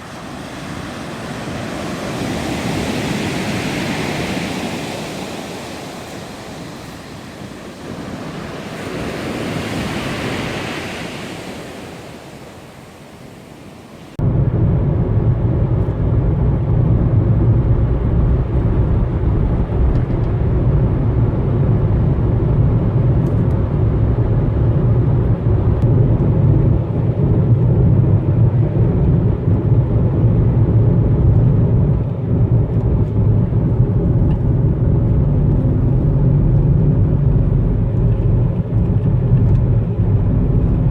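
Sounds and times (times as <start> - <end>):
surf on a shore: 0.0 - 14.2
car driving rumble: 14.2 - 40.9.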